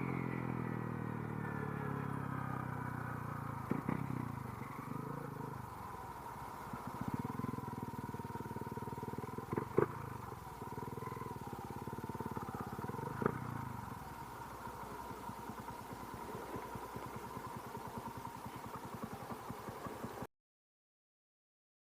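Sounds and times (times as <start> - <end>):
motorcycle engine running: 0.0 - 20.3.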